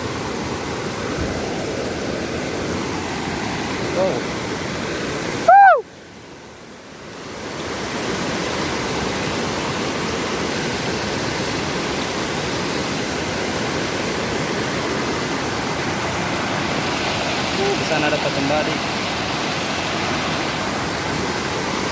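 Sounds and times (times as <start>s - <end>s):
waterfall rushing: 0.0s - 21.9s
person exclaiming: 5.4s - 5.9s.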